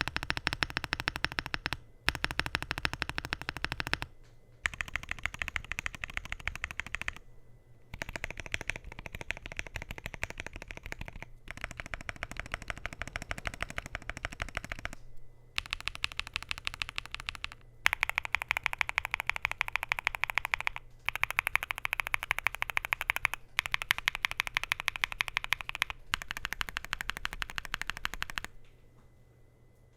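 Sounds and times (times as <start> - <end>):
fast typing on mechanical keyboard: 0.0 - 7.2, 7.9 - 15.0, 15.6 - 28.6.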